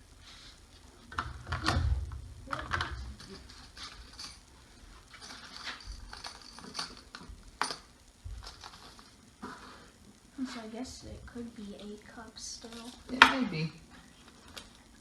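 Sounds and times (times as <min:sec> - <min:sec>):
tools and wood clicking and knocking: 0:05.2 - 0:09.0.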